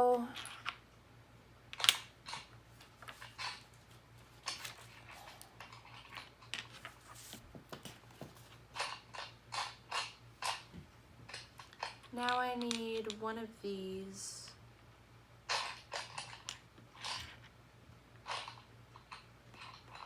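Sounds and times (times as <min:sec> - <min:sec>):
plastic lego pieces clicking: 0:11.3 - 0:13.2.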